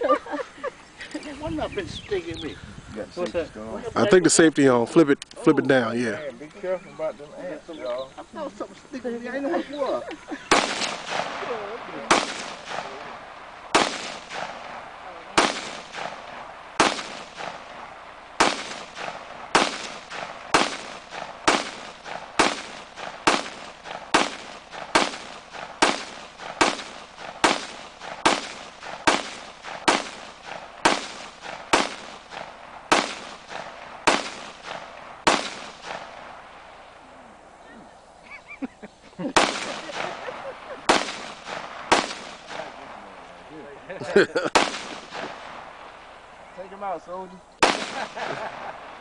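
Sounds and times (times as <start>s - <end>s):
rifle shots with echo: 10.5s - 36.8s, 39.4s - 43.3s, 44.4s - 46.1s, 47.6s - 49.0s.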